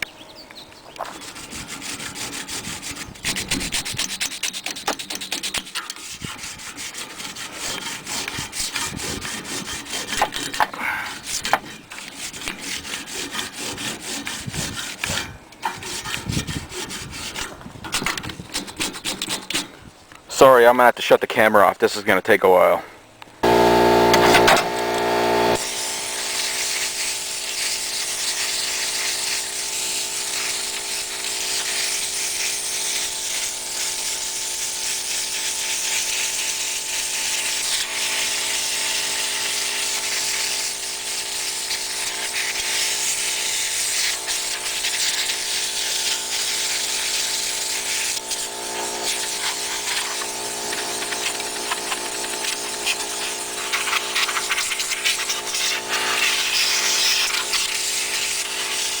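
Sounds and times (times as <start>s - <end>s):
motor whining with rushing air: 23.4s - 36.0s, 46.2s - 59.0s.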